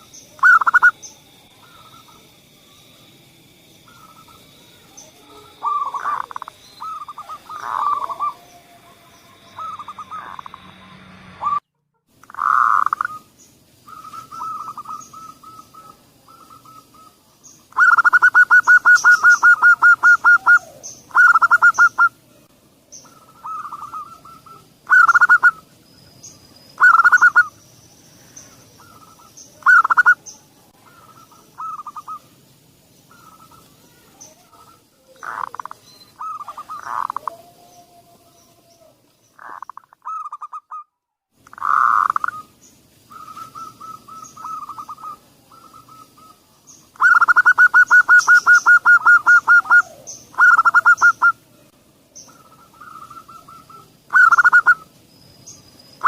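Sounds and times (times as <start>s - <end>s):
dove cooing: 0.0s - 2.2s, 3.9s - 11.7s, 12.3s - 22.2s, 23.0s - 25.7s, 26.8s - 27.6s, 28.8s - 32.4s, 33.1s - 40.8s, 41.5s - 51.4s, 52.3s - 54.9s.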